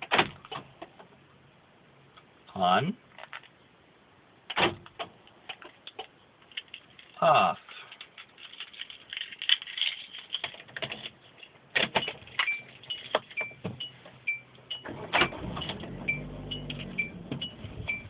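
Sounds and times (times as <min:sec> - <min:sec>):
car keys jangling: 0:07.8 - 0:13.9
low steady hum: 0:11.1 - 0:18.0
car warning chime: 0:12.4 - 0:18.0.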